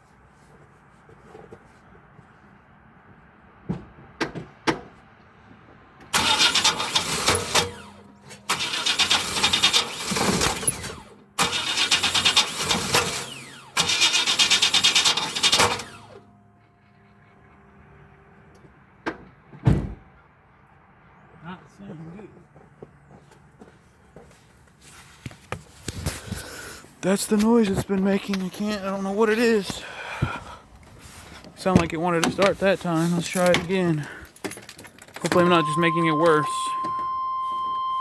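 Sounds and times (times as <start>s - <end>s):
engine cranking without starting: 6.1s - 17.3s, 26.1s - 36.8s.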